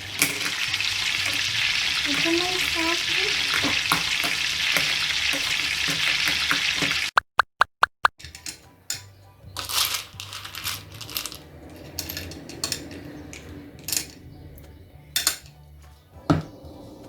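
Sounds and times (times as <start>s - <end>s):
toy dishes clinking and tapping: 0.0s - 7.0s, 8.2s - 14.2s, 15.1s - 15.6s.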